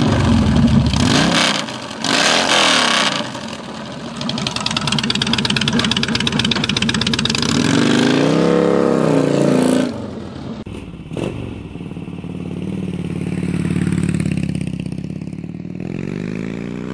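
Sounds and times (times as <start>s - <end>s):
motorcycle engine revving: 0.0s - 16.9s.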